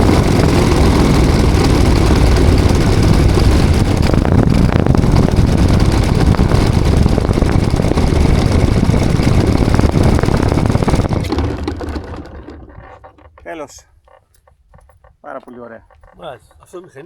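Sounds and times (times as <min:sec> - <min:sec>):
model plane engine running: 0:00.0 - 0:13.1.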